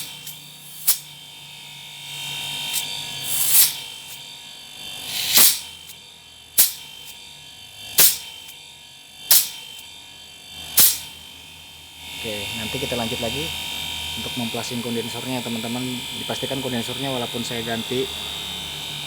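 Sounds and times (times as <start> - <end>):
compressor electric hum: 0.0 - 19.0
sharp hissing pops: 0.8 - 1.1, 2.7 - 3.8, 5.1 - 6.0, 6.6 - 7.2, 8.0 - 8.6, 9.3 - 9.6, 10.8 - 11.1.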